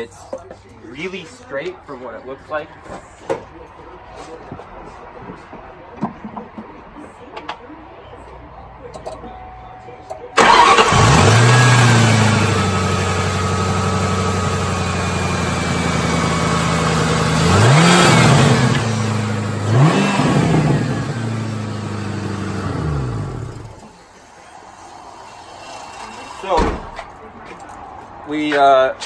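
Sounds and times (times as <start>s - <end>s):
car engine revving: 10.4s - 23.8s
car engine starting and idling: 10.4s - 24.2s.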